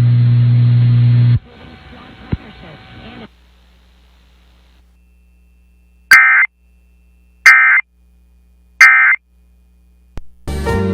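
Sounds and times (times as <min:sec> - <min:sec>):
harsh two-tone data warble: 0:06.1 - 0:06.5, 0:07.4 - 0:07.9, 0:08.8 - 0:09.2.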